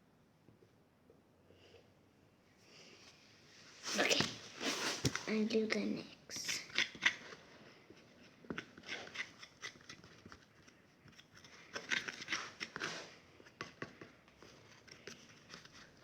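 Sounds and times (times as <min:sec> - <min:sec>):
hands mixing slime dough: 0:03.8 - 0:16.0.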